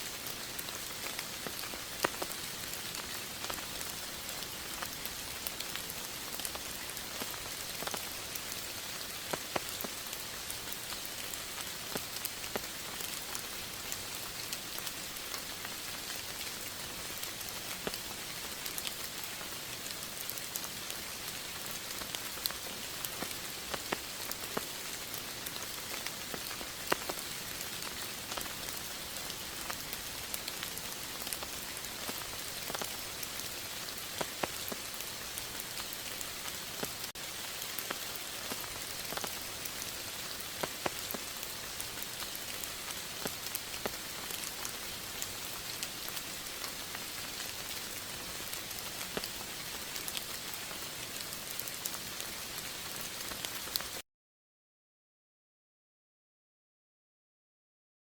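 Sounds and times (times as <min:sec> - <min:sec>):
rain drops ticking on a surface: 0:00.0 - 0:54.0.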